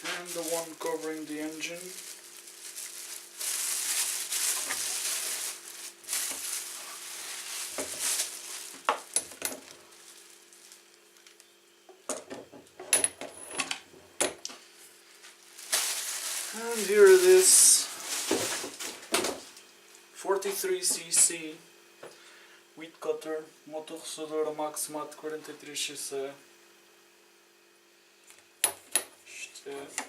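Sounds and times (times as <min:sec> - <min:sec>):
plastic wrapping crinkling: 0:00.0 - 0:11.6, 0:14.6 - 0:19.7.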